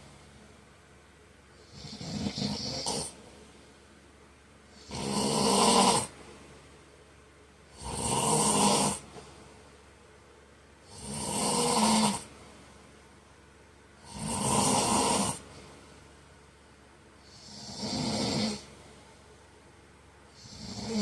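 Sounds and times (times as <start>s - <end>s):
quiet breathing: 0.0s - 0.7s, 1.5s - 6.8s, 8.6s - 9.8s, 13.9s - 16.5s, 17.1s - 19.6s
man snoring: 1.6s - 3.2s, 4.8s - 6.1s, 7.7s - 9.1s, 10.8s - 12.3s, 14.0s - 15.4s, 17.2s - 18.7s, 20.3s - 21.0s.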